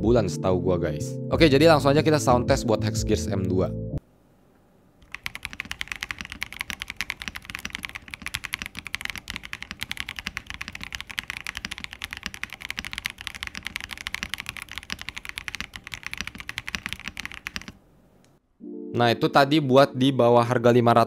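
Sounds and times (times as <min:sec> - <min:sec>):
mechanical keyboard typing: 0:05.0 - 0:17.8.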